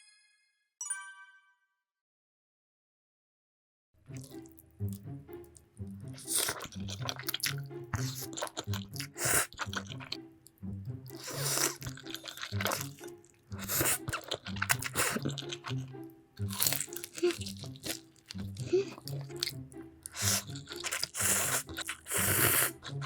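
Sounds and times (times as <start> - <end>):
background music: 4.0 - 23.0
loud crunching and chewing food: 4.2 - 5.0, 6.0 - 23.0.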